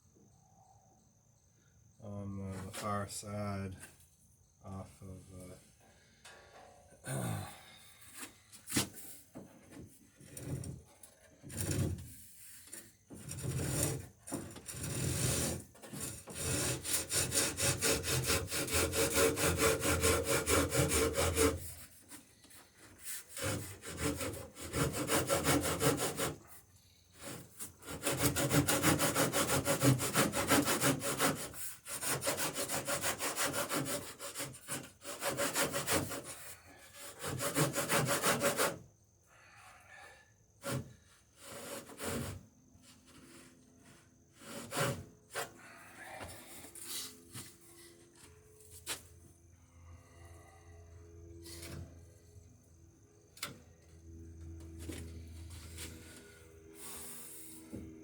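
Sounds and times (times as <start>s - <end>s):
handsaw cutting wood: 13.1s - 26.6s, 27.2s - 38.8s, 40.6s - 42.4s, 43.1s - 45.6s.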